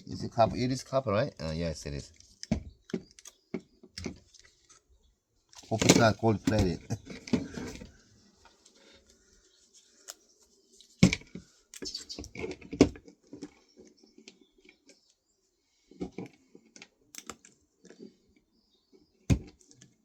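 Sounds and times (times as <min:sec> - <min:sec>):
small tools clicking and tapping: 0:02.2 - 0:04.8, 0:17.2 - 0:17.5.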